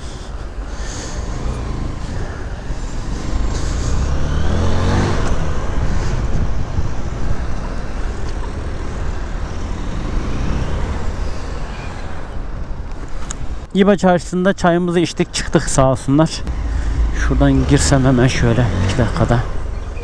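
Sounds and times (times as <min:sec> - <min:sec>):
motorcycle engine revving: 0:01.0 - 0:11.3, 0:16.5 - 0:19.8.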